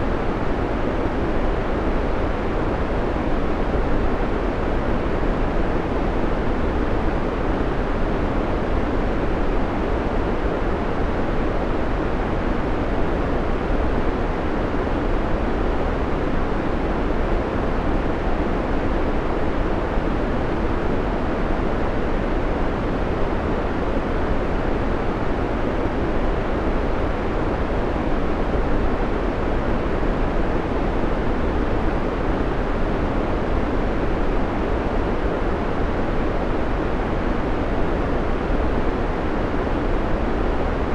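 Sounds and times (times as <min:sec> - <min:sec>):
white noise hiss: 0:00.0 - 0:40.9.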